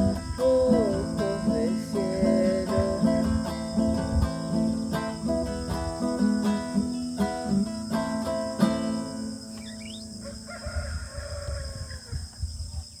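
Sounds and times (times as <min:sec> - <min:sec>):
acoustic guitar strumming: 0:00.0 - 0:10.4
rooster crowing: 0:09.7 - 0:12.4.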